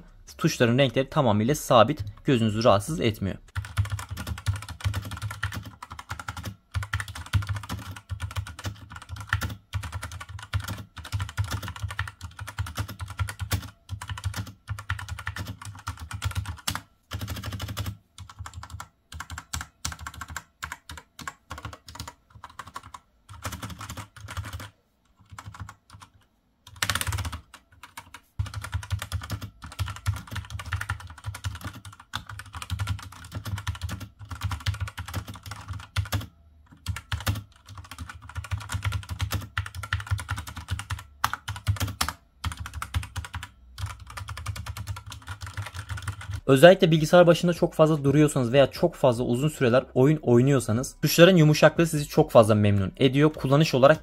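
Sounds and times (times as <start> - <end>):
fast typing on mechanical keyboard: 3.5 - 46.4.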